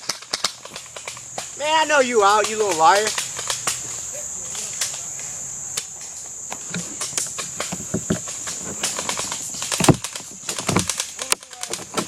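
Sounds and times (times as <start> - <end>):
sharp clicks and knocks: 0.0 - 1.6, 5.8 - 12.0
high-pitched insect chorus: 0.0 - 12.0.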